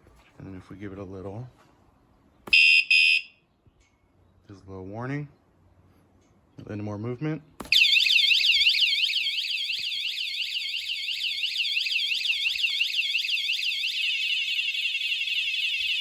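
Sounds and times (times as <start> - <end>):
bike alarm siren sweeping: 2.6 - 3.3, 7.7 - 16.0.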